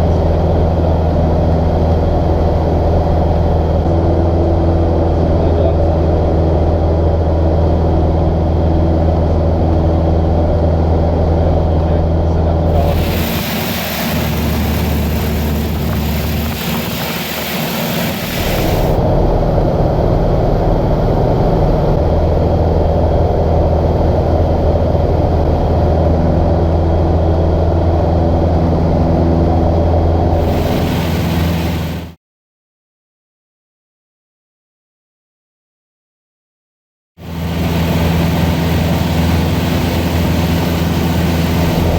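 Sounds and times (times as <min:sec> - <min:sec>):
plane engine drone: 0:00.0 - 0:32.2, 0:37.2 - 0:41.9
loud hiss: 0:12.7 - 0:19.0, 0:30.4 - 0:32.2.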